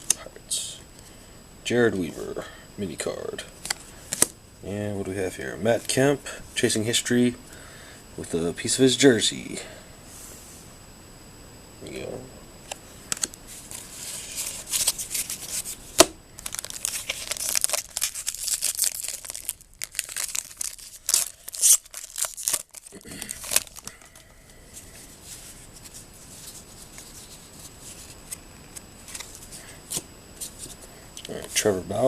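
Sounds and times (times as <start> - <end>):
plastic wrapper tearing and crinkling: 13.1 - 24.3, 26.9 - 29.4.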